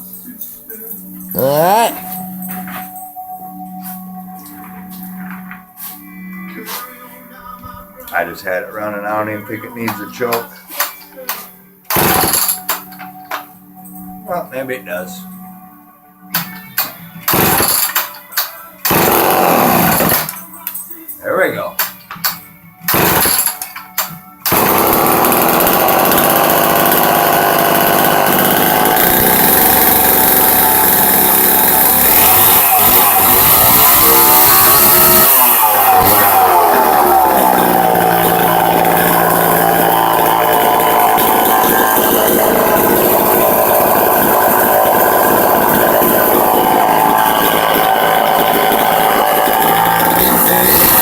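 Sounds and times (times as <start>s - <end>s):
chainsaw engine running: 11.9s - 12.9s, 17.3s - 18.1s, 18.8s - 20.4s, 22.9s - 23.6s, 24.4s - 51.0s.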